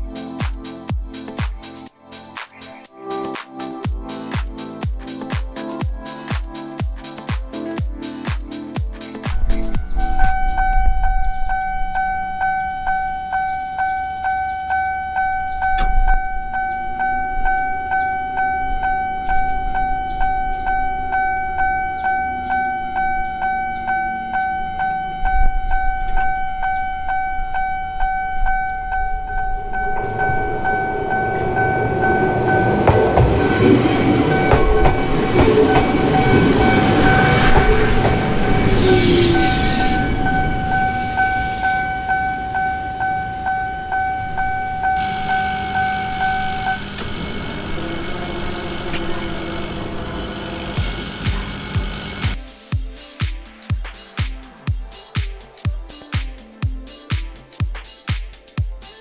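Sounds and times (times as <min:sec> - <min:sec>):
high hiss of passing train: 0:00.0 - 0:11.0, 0:29.6 - 0:58.1
level crossing warning bell: 0:10.3 - 0:52.4
train rumble and wheel clatter: 0:29.2 - 0:52.4.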